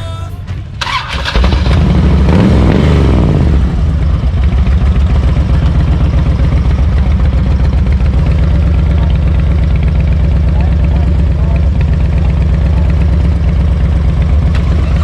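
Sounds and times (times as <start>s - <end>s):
motorcycle engine revving: 0.4s - 15.0s.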